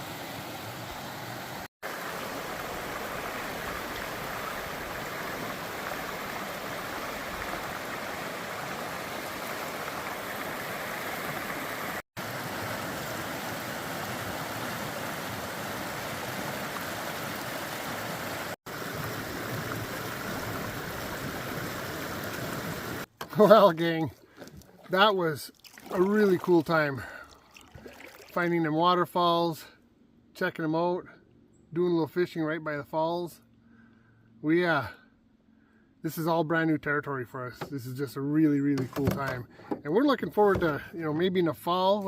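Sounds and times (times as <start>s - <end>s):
waterfall rushing: 0.8s - 23.1s.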